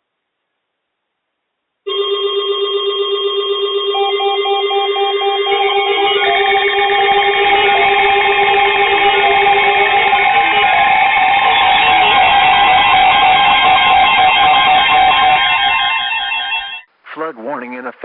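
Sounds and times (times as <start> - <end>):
steady electronic alarm tones: 1.9 - 16.9
beeping tones: 3.8 - 16.9.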